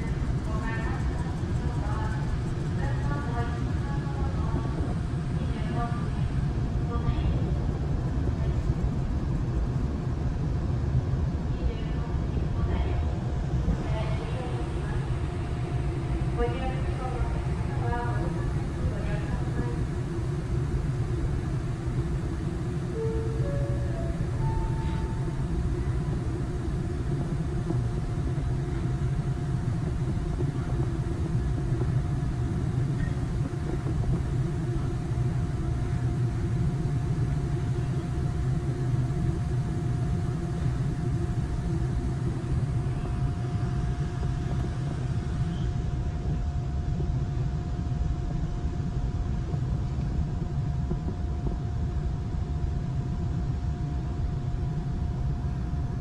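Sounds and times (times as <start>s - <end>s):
faint steady whine: 0.0s - 56.0s
ship engines droning: 13.7s - 42.8s.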